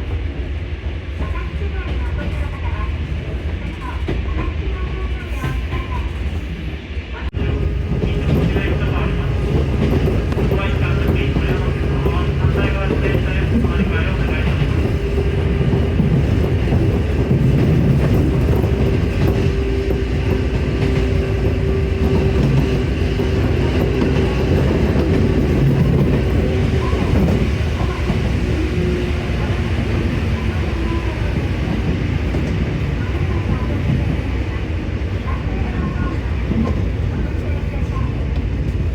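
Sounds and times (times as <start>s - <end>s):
train rumble from inside: 0.0s - 38.9s.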